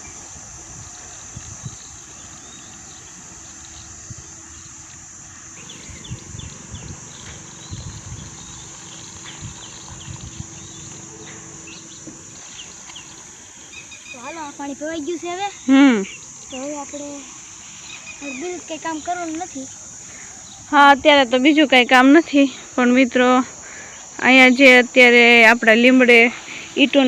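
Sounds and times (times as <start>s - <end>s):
insect drone: 0.0s - 27.0s
bird chirps: 5.6s - 16.8s.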